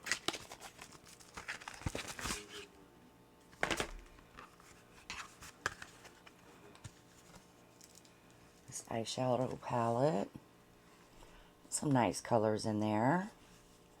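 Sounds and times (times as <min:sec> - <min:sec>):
packaging crinkling and tearing: 0:00.0 - 0:02.7.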